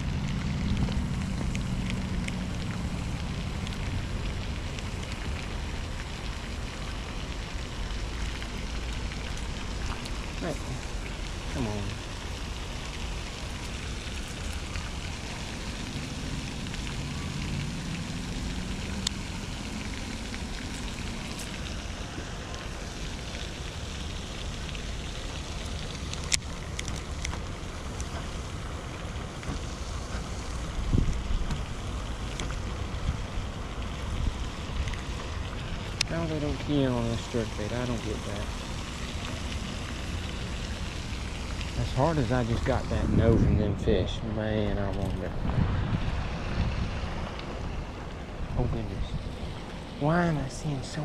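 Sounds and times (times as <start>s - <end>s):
low rumble: 0.0s - 36.2s, 37.6s - 50.1s
wind on microphone: 30.7s - 31.7s, 42.0s - 49.5s.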